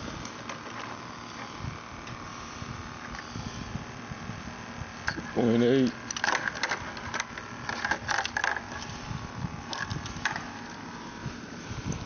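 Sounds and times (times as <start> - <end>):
low steady hum: 0.0 - 12.0
handling clicks and rustles: 0.2 - 2.2, 5.1 - 12.0.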